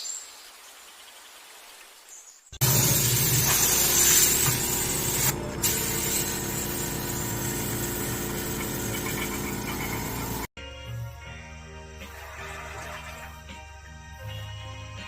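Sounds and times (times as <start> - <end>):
air compressor humming: 2.6 - 10.5
spray gun hissing: 2.6 - 10.5.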